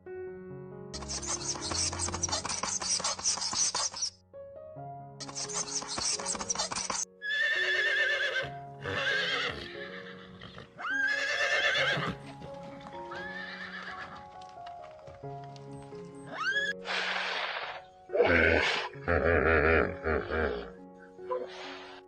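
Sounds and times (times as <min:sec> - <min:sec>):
background music: 0:00.0 - 0:22.0
wavering high animal calls: 0:01.0 - 0:04.1, 0:05.2 - 0:08.4.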